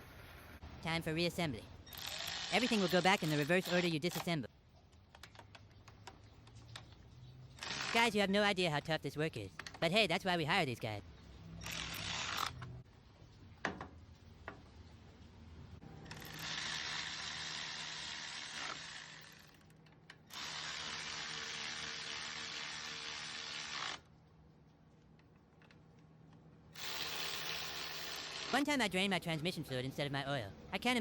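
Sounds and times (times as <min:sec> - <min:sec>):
power tool driving bolts: 0:01.9 - 0:04.3, 0:07.6 - 0:08.0, 0:11.6 - 0:12.7, 0:16.0 - 0:24.0, 0:26.8 - 0:28.6.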